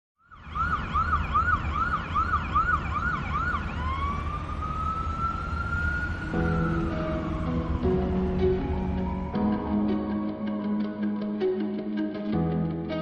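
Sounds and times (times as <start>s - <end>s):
emergency siren: 0.2s - 11.5s
low engine rumble: 4.0s - 10.3s
music: 6.2s - 13.0s.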